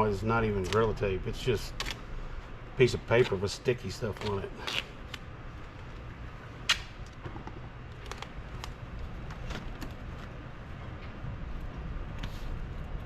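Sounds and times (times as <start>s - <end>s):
low steady hum: 0.0s - 13.0s
tape tearing snap: 4.1s - 5.2s, 6.6s - 7.2s.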